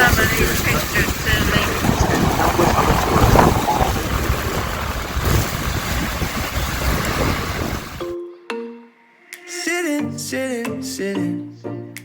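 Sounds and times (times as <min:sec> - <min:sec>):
boat and water rumble: 0:00.0 - 0:08.1
wind buffeting microphone: 0:00.0 - 0:08.1.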